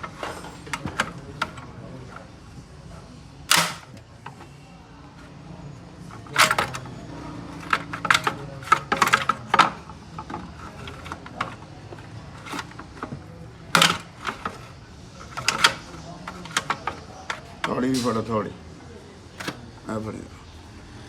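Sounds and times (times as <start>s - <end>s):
metal tools clinking and clanking: 3.5s - 4.0s, 6.1s - 18.2s.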